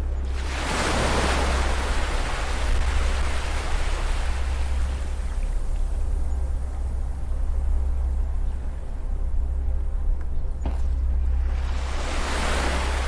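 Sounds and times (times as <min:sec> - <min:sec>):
low surf rumble: 0:00.0 - 0:13.0
wave washing hiss: 0:00.2 - 0:05.7, 0:11.3 - 0:13.0.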